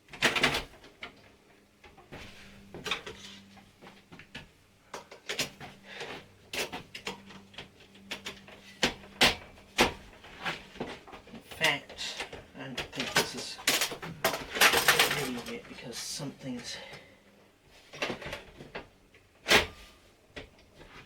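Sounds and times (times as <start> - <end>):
computer case clicks and knocks: 6.5 - 11.4.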